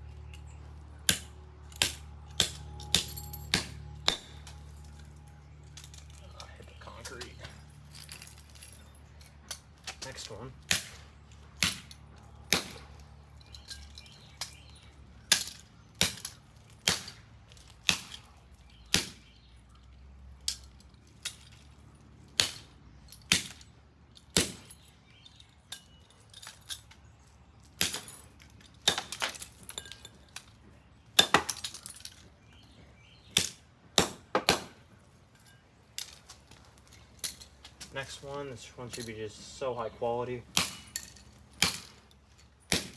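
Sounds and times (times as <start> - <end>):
axe striking metal on concrete: 1.0 - 4.8, 10.7 - 13.0, 15.3 - 17.2, 17.8 - 19.3, 22.4 - 22.7, 23.3 - 23.6, 24.3 - 24.8, 27.8 - 28.2, 28.8 - 30.1, 31.2 - 32.1, 33.3 - 34.8, 40.5 - 42.9.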